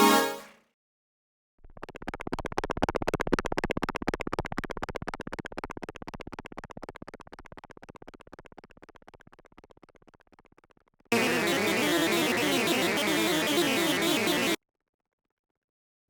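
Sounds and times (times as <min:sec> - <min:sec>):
noisy pulsing synthesizer: 0:11.1 - 0:14.6.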